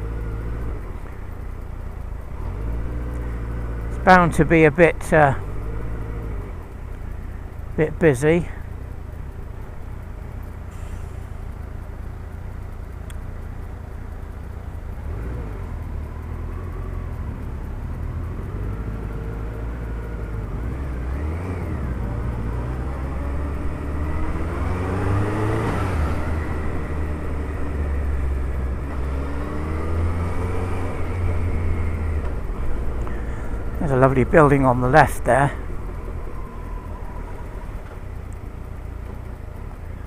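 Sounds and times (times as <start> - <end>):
motorcycle engine revving: 14.9 - 40.0.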